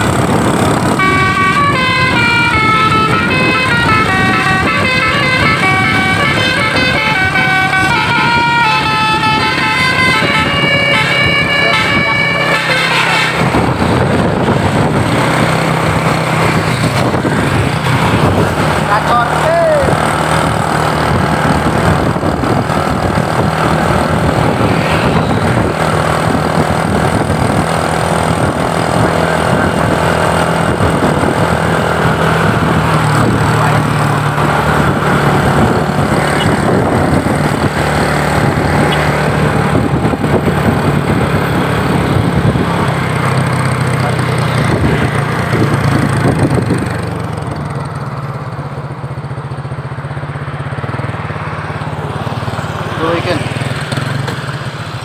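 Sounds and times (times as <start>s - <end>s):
road noise: 0.0s - 55.0s
vehicle engine running: 0.0s - 55.0s.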